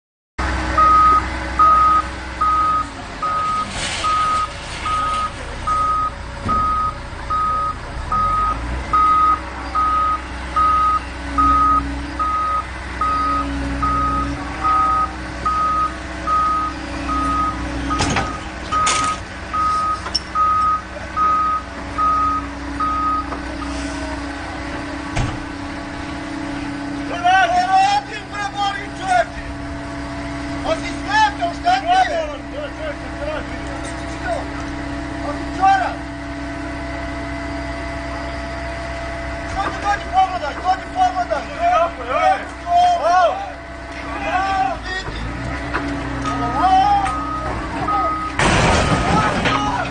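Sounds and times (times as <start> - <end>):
heavy vehicle engine running: 0.4 - 49.9
reversing alarm beeping: 0.8 - 23.8, 46.8 - 49.7.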